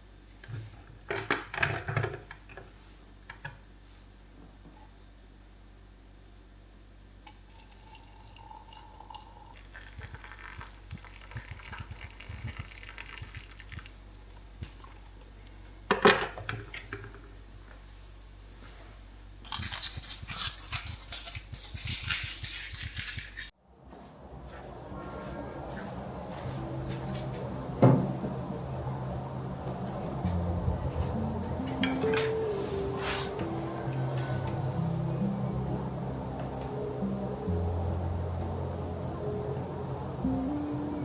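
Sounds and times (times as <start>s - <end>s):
liquid pouring and dripping: 7.3s - 15.0s.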